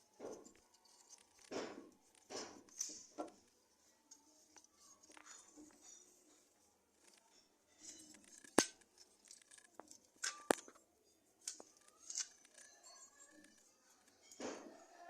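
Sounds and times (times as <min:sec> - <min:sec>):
metal parts clicking and scraping: 0:00.0 - 0:15.0.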